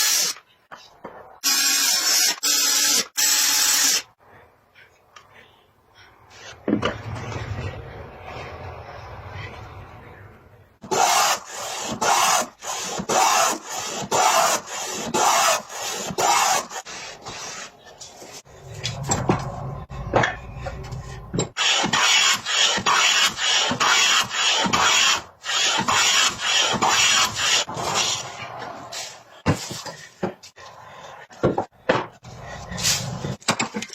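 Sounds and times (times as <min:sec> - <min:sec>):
hand tool scraping wood: 0:10.9 - 0:18.5, 0:21.6 - 0:31.4.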